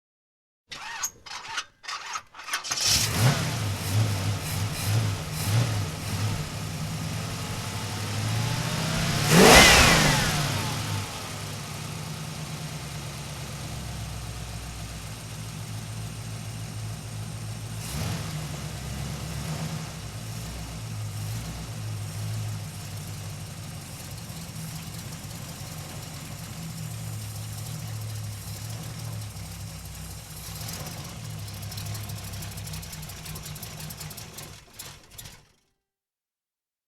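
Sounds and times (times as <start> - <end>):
car engine starting and idling: 2.4 - 35.7
car engine revving: 2.7 - 12.8, 17.6 - 23.1.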